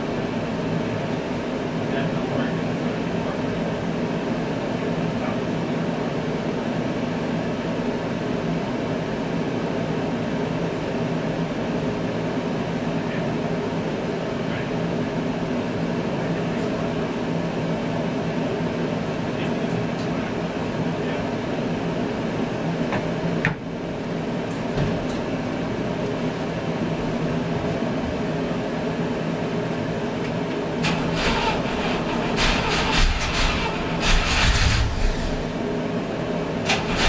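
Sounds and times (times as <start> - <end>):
rough rattling noise: 30.8 - 35.5
car engine running: 30.8 - 35.8.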